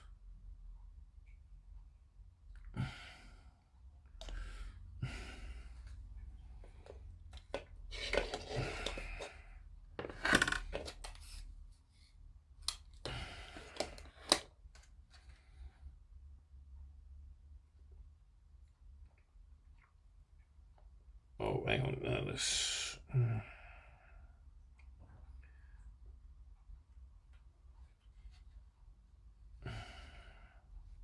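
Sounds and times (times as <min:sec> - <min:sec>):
plastic parts rustling: 0:06.7 - 0:09.4, 0:10.0 - 0:11.4.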